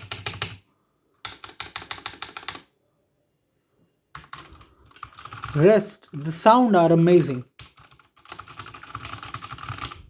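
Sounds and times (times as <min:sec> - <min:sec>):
typing on mechanical keyboard: 0:00.0 - 0:00.6, 0:01.2 - 0:02.7, 0:04.2 - 0:05.6, 0:07.5 - 0:10.0.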